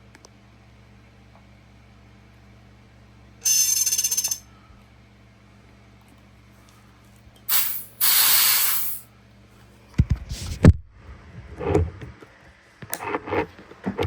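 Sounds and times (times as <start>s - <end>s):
high-pressure air hissing: 7.5s - 9.0s
metal parts clicking and knocking: 7.5s - 9.0s.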